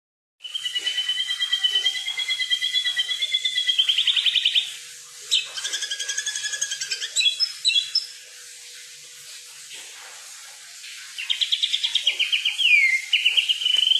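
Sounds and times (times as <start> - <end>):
songbird whistling and trilling: 0.4 - 4.7, 5.3 - 8.1, 11.2 - 13.9
sharp high bird calls: 0.4 - 8.2, 11.2 - 13.9.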